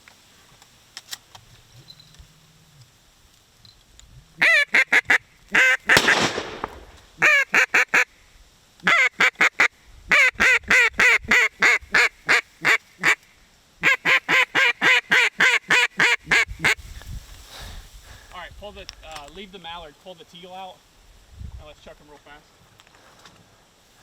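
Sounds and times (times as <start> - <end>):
duck call quacks: 4.4 - 6.2, 7.2 - 8.2, 8.8 - 16.8.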